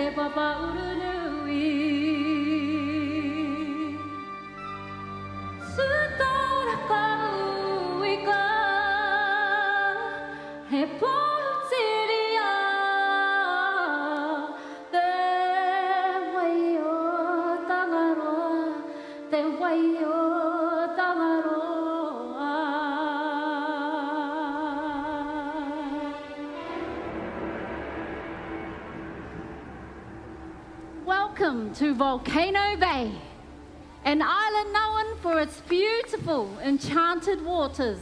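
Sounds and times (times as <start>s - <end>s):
woman singing with vibrato: 0.0s - 4.3s, 5.6s - 29.2s, 30.9s - 38.0s
low accompaniment: 24.6s - 38.0s.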